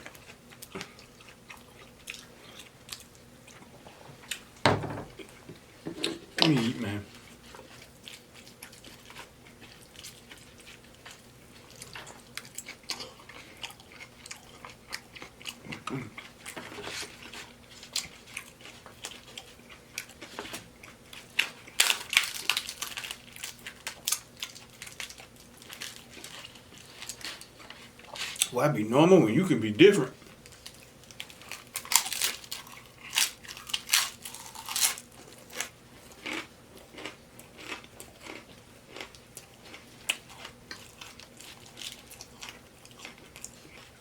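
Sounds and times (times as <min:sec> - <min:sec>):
chewing with wet mouth clicks: 0:00.0 - 0:03.6, 0:07.5 - 0:16.6, 0:30.5 - 0:44.0.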